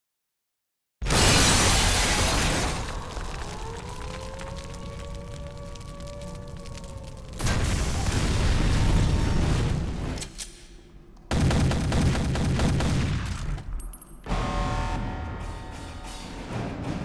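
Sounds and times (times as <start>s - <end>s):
booms: 1.0s - 10.3s
action film music: 9.1s - 17.0s
gunfire: 11.3s - 14.0s.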